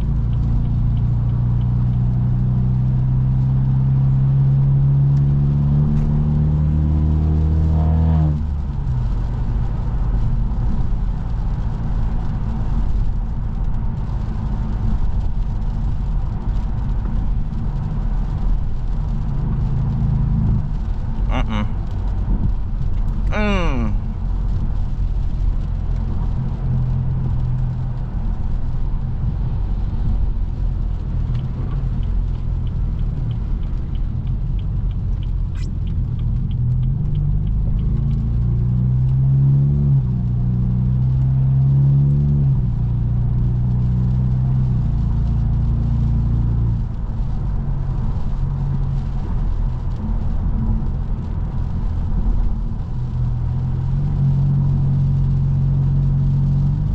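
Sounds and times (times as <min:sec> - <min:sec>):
light regular ticking: 0:00.0 - 0:02.5, 0:31.0 - 0:38.4
car engine droning: 0:00.0 - 0:56.9.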